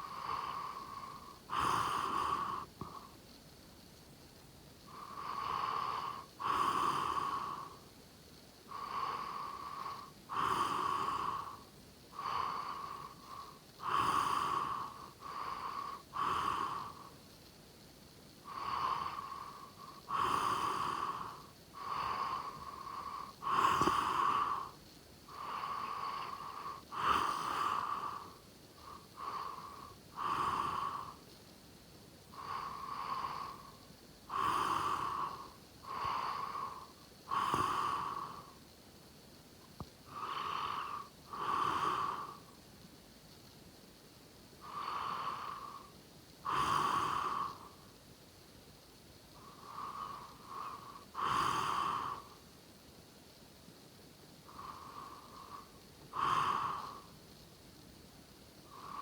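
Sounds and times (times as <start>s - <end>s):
person snoring: 0.0s - 3.1s, 4.9s - 7.8s, 8.7s - 11.6s, 12.2s - 17.1s, 18.5s - 31.2s, 32.4s - 38.6s, 40.1s - 42.4s, 44.6s - 47.8s, 49.4s - 52.4s, 54.5s - 57.1s.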